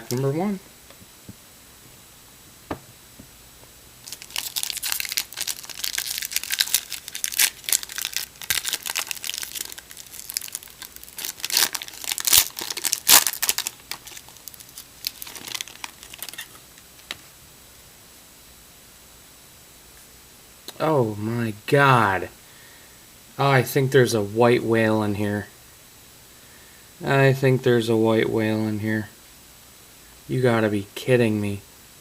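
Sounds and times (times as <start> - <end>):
wrapper tearing and crinkling: 4.0 - 16.6.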